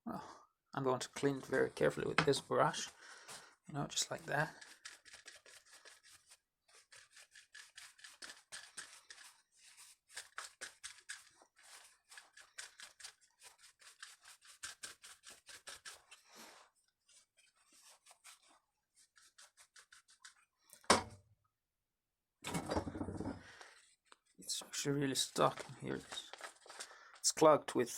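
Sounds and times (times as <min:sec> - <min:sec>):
stiff brush scrubbing: 0:03.9 - 0:20.5.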